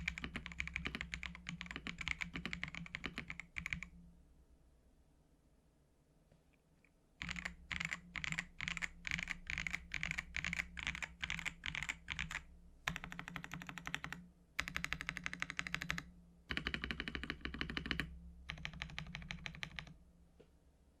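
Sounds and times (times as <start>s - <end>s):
mechanical keyboard typing: 0.0s - 3.9s, 7.2s - 20.0s.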